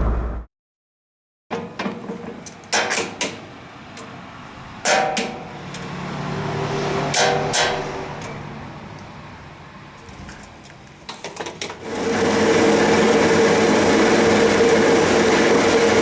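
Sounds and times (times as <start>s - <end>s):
car cabin rumble: 0.0s - 0.4s
low hum: 0.0s - 0.5s.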